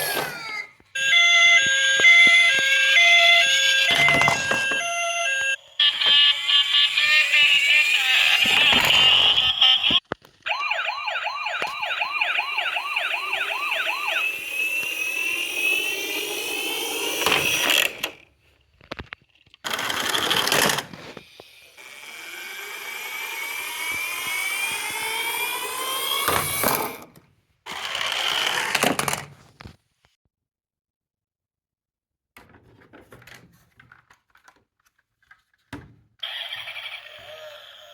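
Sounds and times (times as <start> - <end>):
toy electronic siren: 1.0 - 18.1, 21.7 - 27.0, 36.2 - 37.9.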